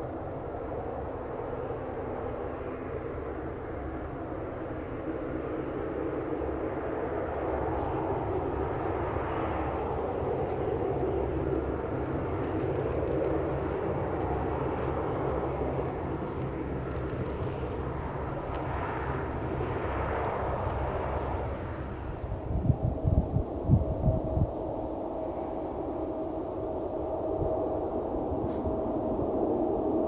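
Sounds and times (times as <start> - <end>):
turboprop engine and propeller noise: 0.0 - 30.0.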